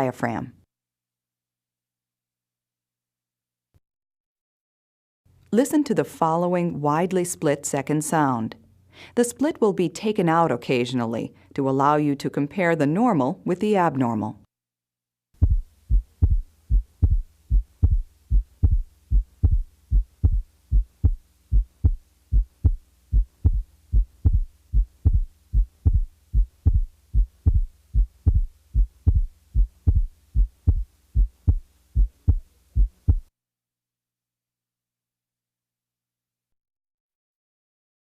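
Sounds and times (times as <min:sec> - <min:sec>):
heartbeat lub-dub: 0:15.4 - 0:33.3.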